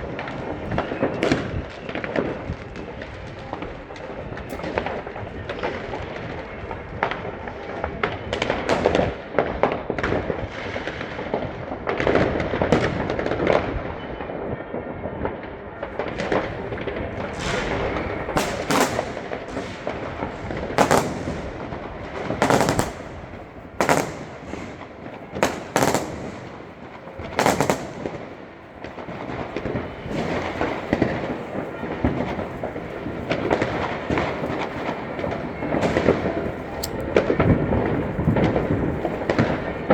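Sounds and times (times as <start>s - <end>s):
firecrackers crackling: 0.0s - 13.8s, 15.8s - 39.9s
firework bangs: 0.0s - 13.8s, 15.8s - 39.9s.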